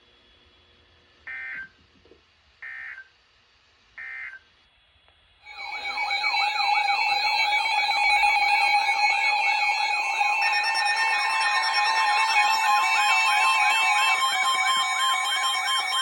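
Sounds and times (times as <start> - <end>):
short digital chirps: 5.5 - 16.0
warbling electronic alert tone: 5.5 - 16.0.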